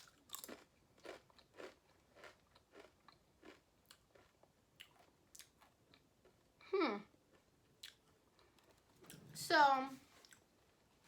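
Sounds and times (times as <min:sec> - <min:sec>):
person chewing crunchy chips: 0:00.0 - 0:06.4.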